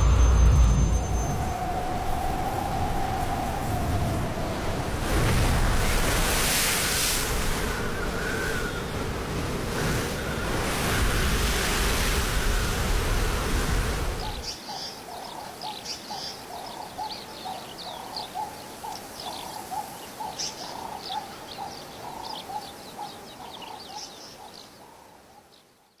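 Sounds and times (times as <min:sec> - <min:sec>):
low repeated bird notes: 0:00.0 - 0:03.5.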